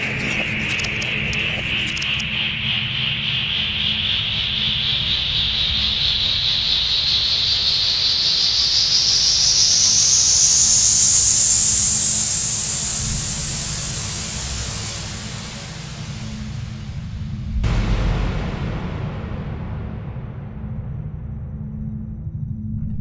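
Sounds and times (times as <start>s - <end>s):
low rumbling drone: 17.4s - 23.0s.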